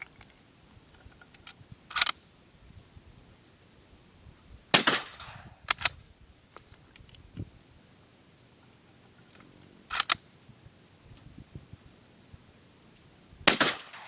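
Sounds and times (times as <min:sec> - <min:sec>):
metallic clicks: 0:01.1 - 0:02.2, 0:09.9 - 0:10.2
shotgun shot: 0:04.7 - 0:05.6, 0:13.4 - 0:14.0.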